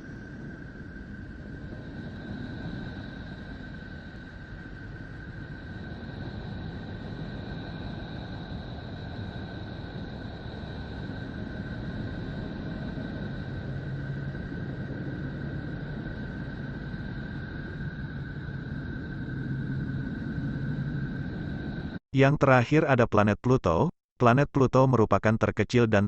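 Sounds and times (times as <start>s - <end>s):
low hum: 0.0s - 22.0s
steady rushing drone: 0.0s - 22.0s.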